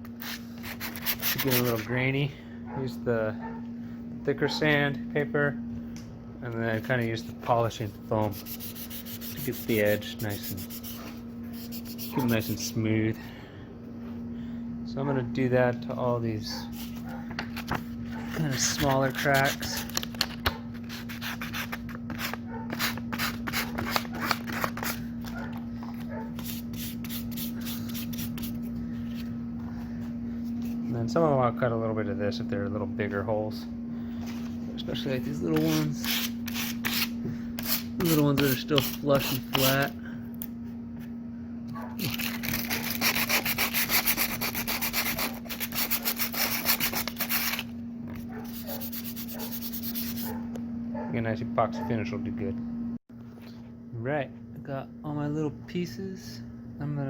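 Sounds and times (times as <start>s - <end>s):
sandpaper rubbing by hand: 0.2s - 1.8s, 7.1s - 12.8s, 18.3s - 20.0s, 20.8s - 25.0s, 26.3s - 29.2s, 35.4s - 39.8s, 42.0s - 47.7s, 48.4s - 50.4s.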